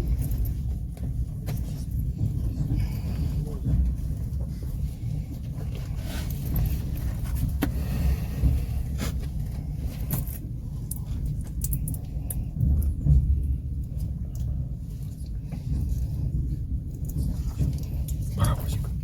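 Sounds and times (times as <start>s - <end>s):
train rumbling on rails: 0.0s - 19.0s.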